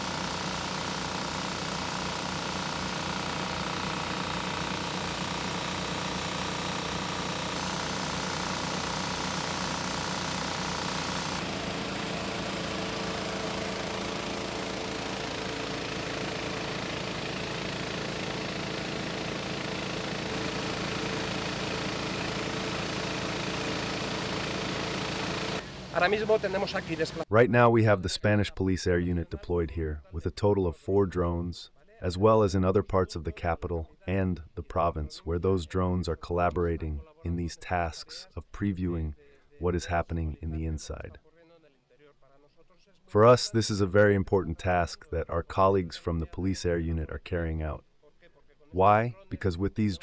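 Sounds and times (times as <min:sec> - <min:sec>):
machine hum: 0:00.0 - 0:27.3.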